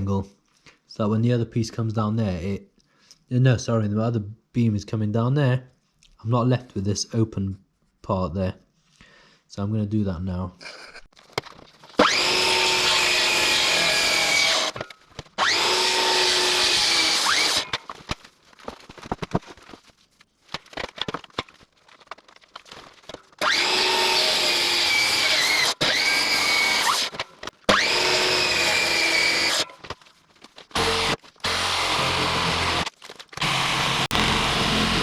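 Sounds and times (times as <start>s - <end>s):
electric saw cutting wood: 12.0s - 14.8s, 15.4s - 17.8s, 23.4s - 29.9s, 30.7s - 35.0s.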